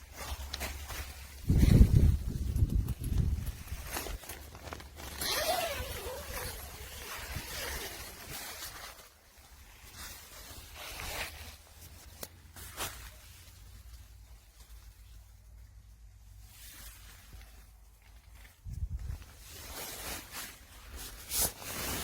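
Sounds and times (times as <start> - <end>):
fabric rustling: 0.0 - 22.0
zipper being pulled: 0.2 - 9.1.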